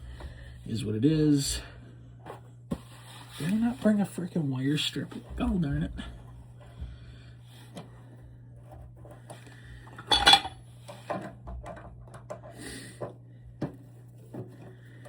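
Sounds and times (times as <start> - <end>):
faint low hum: 0.0 - 15.0
metal tools clinking: 10.0 - 10.6.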